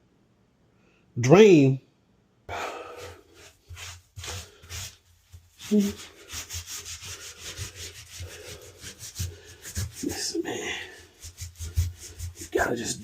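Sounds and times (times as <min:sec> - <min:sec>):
scrubbing and scraping: 0:02.9 - 0:13.0.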